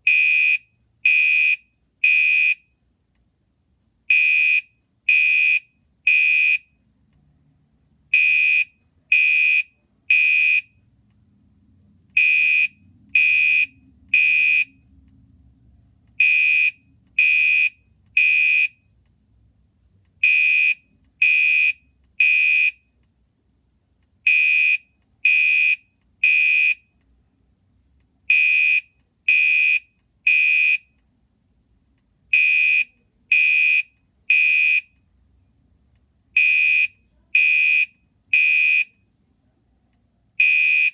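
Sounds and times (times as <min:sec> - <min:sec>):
fire alarm horn beeping: 0:00.0 - 0:02.7, 0:04.1 - 0:06.7, 0:08.1 - 0:10.8, 0:12.2 - 0:14.8, 0:16.2 - 0:18.8, 0:20.2 - 0:22.8, 0:24.3 - 0:26.9, 0:28.3 - 0:31.0, 0:32.3 - 0:35.0, 0:36.4 - 0:39.0, 0:40.4 - 0:40.9.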